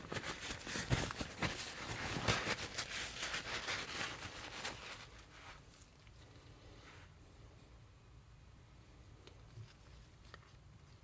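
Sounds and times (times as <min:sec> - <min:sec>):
close rustling: 0:00.0 - 0:07.1.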